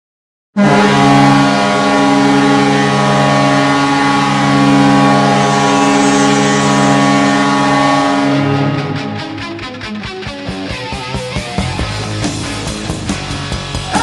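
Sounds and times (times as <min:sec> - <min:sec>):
goal horn chord: 0:00.6 - 0:09.6
rock music: 0:04.1 - 0:14.0.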